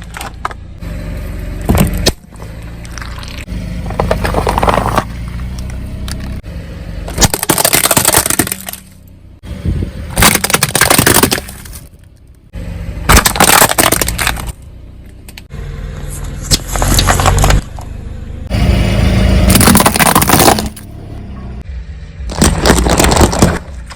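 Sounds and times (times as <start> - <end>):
car engine hum: 0.0 - 23.9
tyre crushing objects: 1.6 - 5.7, 7.1 - 9.0, 10.1 - 12.0, 13.1 - 14.6, 19.5 - 20.9, 22.3 - 23.9.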